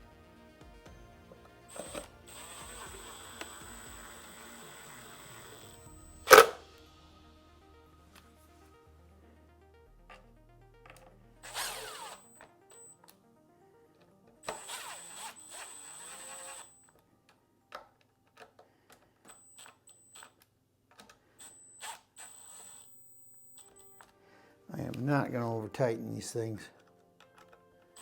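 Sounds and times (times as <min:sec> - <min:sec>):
background music: 0:00.0 - 0:18.8, 0:23.7 - 0:28.0
cordless screwdriver whirring: 0:01.7 - 0:06.6, 0:11.4 - 0:13.0, 0:14.4 - 0:16.9, 0:19.2 - 0:20.4, 0:21.0 - 0:24.1, 0:27.4 - 0:28.0.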